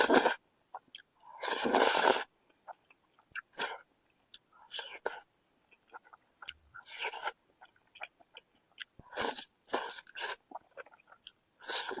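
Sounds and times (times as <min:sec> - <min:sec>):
slurping noodles: 0:00.0 - 0:00.4, 0:01.4 - 0:02.3, 0:11.6 - 0:12.0
wet chewing clicks: 0:05.7 - 0:11.4.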